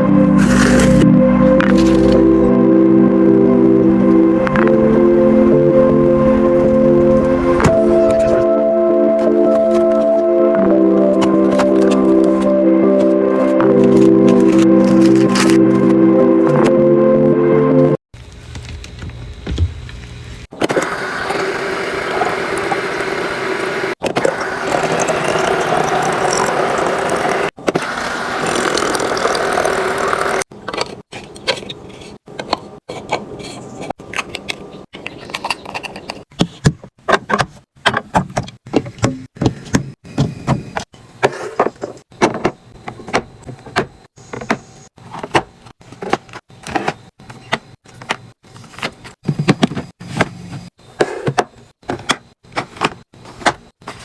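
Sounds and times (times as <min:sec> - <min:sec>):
drinks and snacks clattering: 0:24.0 - 0:27.7.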